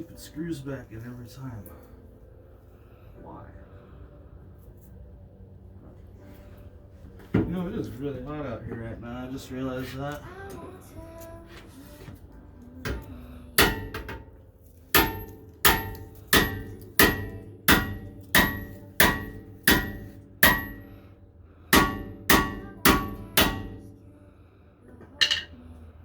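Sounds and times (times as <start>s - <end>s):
hammer blows on metal: 12.9s - 14.3s, 14.9s - 24.0s.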